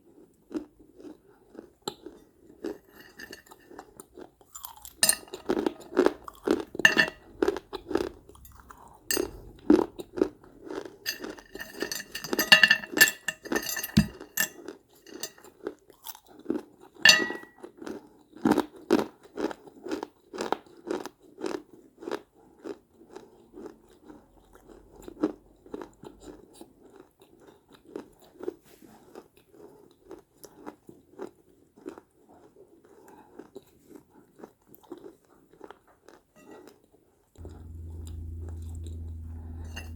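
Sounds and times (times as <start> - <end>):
clay pots being chewed: 1.6 - 15.5.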